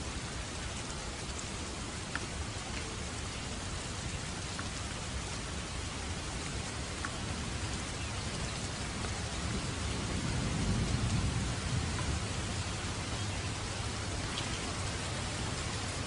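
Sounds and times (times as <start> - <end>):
rain falling: 0.0 - 16.0
thunder rumbling: 7.3 - 16.0.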